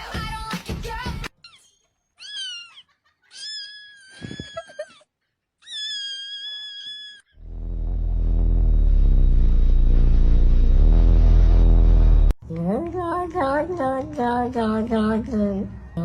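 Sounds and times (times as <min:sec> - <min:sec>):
cat meowing: 0:02.2 - 0:04.5.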